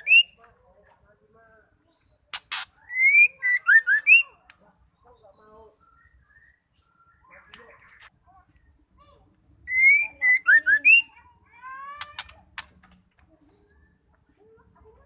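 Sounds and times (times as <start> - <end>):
bird singing whistled notes: 0.0 - 0.4, 1.9 - 4.4, 5.2 - 7.3, 9.6 - 11.2.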